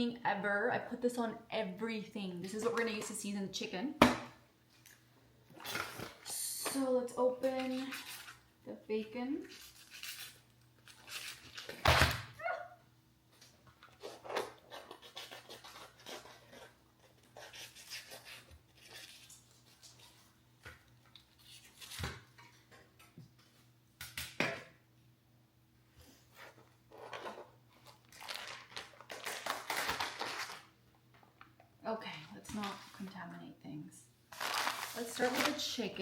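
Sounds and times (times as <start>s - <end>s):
plastic package crinkling and tearing: 9.5s - 11.8s, 27.0s - 30.8s, 34.3s - 35.9s.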